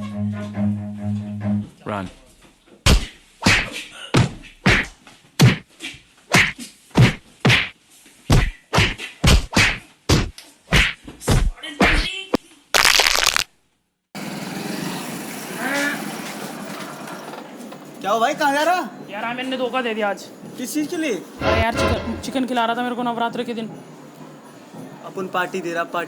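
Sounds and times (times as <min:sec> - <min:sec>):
thuds and whacks: 0:02.8 - 0:05.7, 0:06.3 - 0:12.1.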